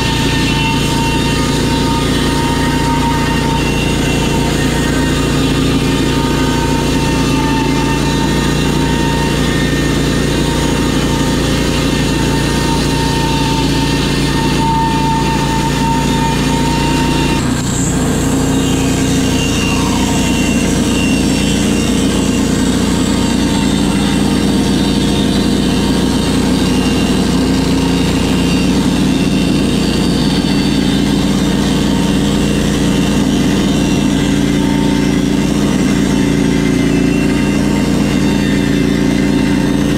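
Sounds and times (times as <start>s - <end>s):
gas engine sawing lumber: 0.0s - 39.9s.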